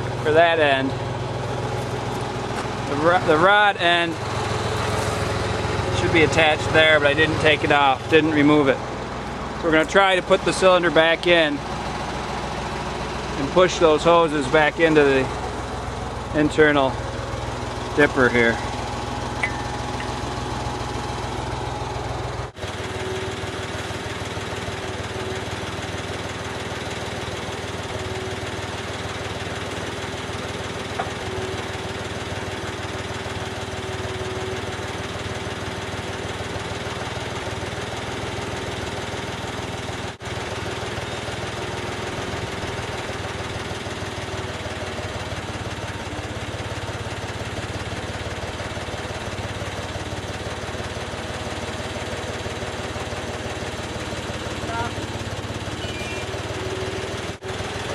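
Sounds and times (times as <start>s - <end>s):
diesel engine running: 0.0s - 57.9s
steady high tone: 19.3s - 20.4s.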